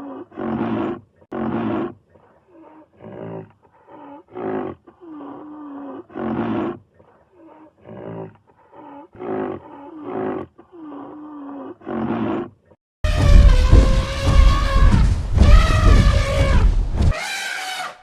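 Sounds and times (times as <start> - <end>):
big cat roaring: 0.0 - 2.0, 2.6 - 6.8, 7.4 - 12.6.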